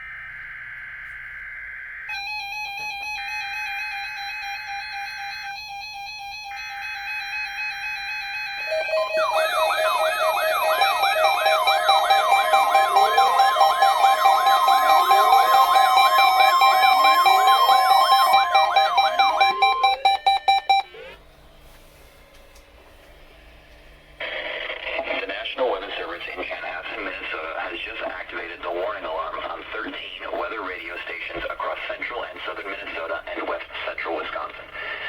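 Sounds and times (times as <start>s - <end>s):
warbling siren: 6.6s - 21.2s
electronic alert beeps and tones: 8.7s - 21.0s.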